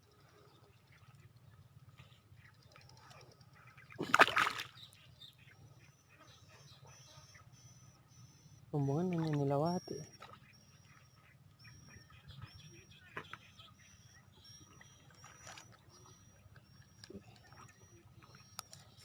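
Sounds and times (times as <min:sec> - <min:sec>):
small bird chirping: 0:04.6 - 0:19.0.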